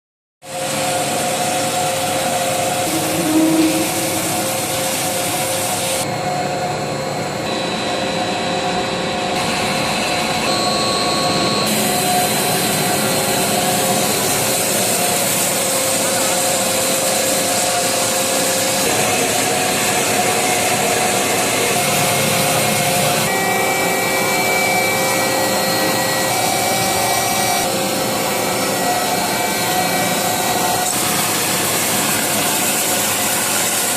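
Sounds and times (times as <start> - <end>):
band saw cutting metal: 1.6 - 6.1, 9.4 - 33.9.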